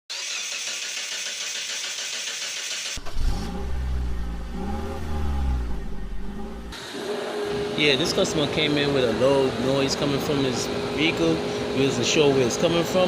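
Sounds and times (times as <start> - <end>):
car drone rising and falling: 3.0 - 8.4.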